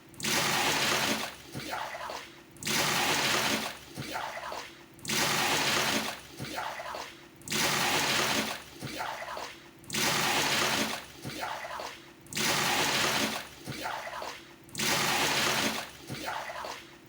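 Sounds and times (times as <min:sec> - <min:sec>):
dipper scooping water: 0:02.6 - 0:04.1, 0:05.1 - 0:06.6, 0:09.9 - 0:11.4, 0:14.8 - 0:16.3
water splashing from a dipper: 0:09.9 - 0:11.4.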